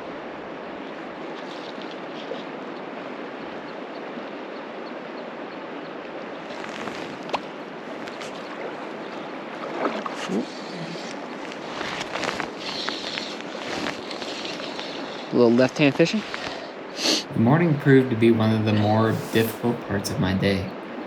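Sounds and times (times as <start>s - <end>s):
river current rushing: 16.2s - 20.1s.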